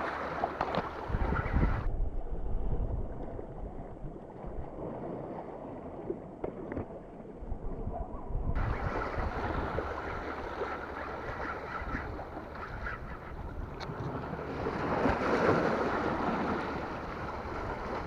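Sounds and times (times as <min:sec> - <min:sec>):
sea water washing: 0:00.0 - 0:01.8, 0:08.6 - 0:18.0
wind buffeting microphone: 0:00.7 - 0:04.7, 0:07.4 - 0:18.0.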